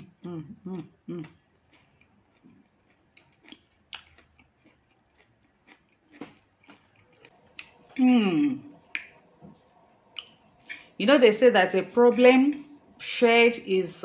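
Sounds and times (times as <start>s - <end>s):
person chewing: 0.0s - 8.1s.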